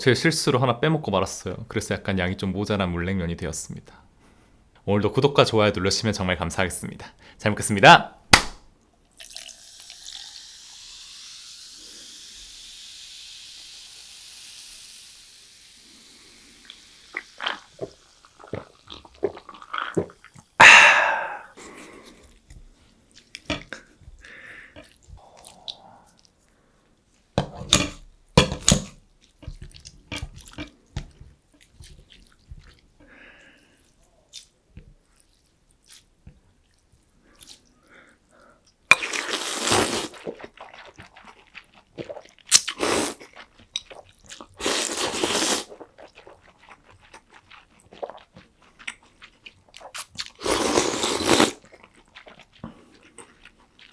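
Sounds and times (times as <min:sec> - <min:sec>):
biting and chewing food: 0:38.9 - 0:53.9.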